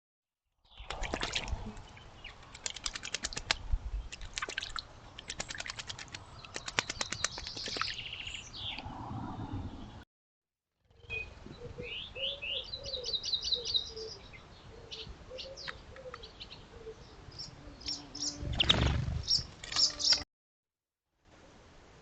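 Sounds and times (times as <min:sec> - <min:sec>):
birds chattering clicks: 0:00.8 - 0:08.9, 0:17.8 - 0:20.2.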